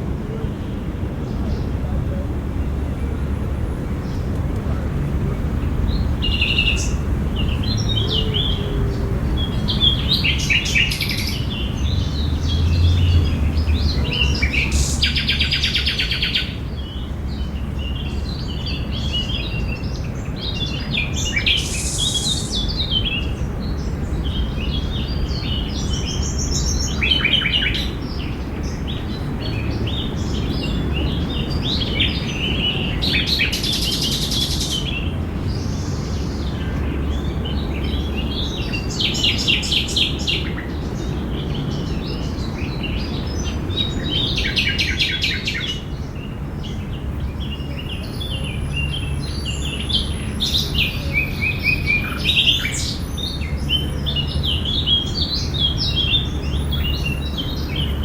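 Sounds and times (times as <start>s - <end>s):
birds chirping and singing: 5.5s - 58.0s.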